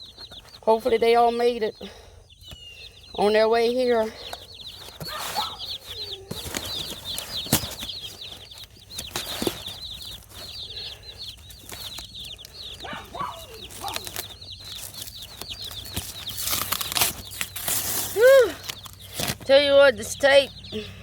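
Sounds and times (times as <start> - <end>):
chicks peeping: 0.0 - 21.0
cardboard and tape rustling: 4.0 - 19.8.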